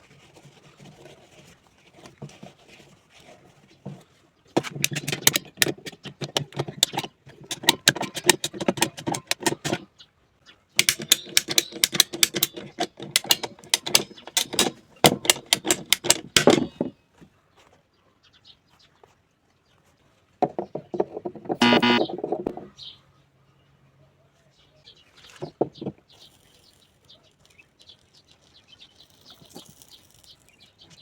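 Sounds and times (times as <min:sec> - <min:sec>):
clicking and tapping of hard objects: 0:04.6 - 0:09.9, 0:10.8 - 0:17.0, 0:20.4 - 0:22.7.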